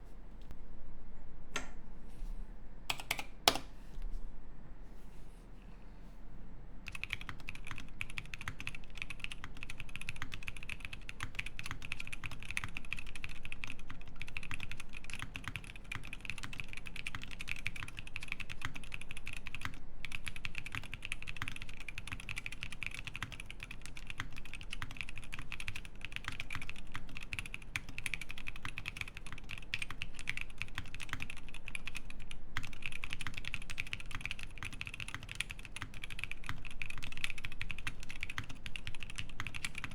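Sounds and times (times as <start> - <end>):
mechanical keyboard typing: 2.9 - 3.7, 6.9 - 39.9.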